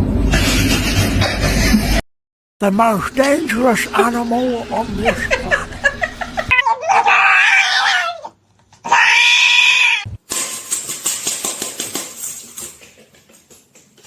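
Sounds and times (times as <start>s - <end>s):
cat yowling: 6.5s - 10.1s.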